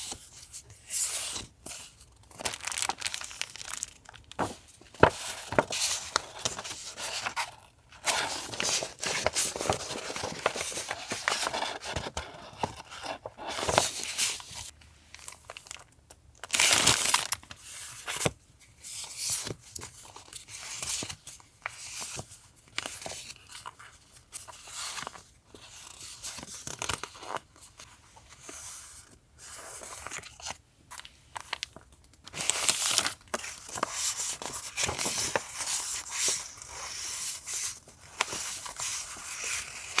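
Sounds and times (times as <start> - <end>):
paper crinkling and tearing: 1.3 - 14.7.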